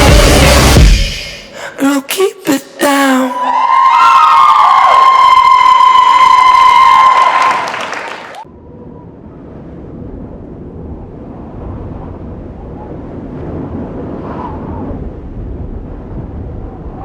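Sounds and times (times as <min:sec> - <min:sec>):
crowd calls and whoops: 0:03.4 - 0:08.4.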